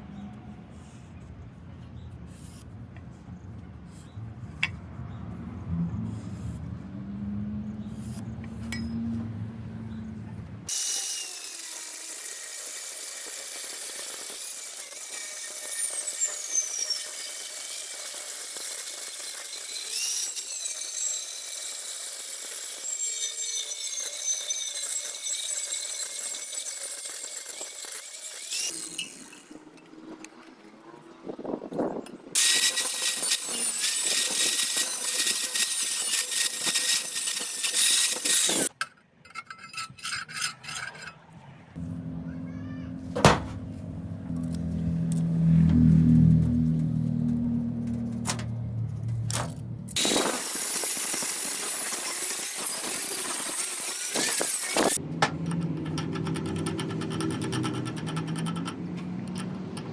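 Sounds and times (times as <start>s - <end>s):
power tool whining on metal: 10.7s - 29.7s, 32.4s - 38.7s, 49.9s - 55.0s
metal knocks and clanks: 43.2s - 43.7s, 55.0s - 59.9s.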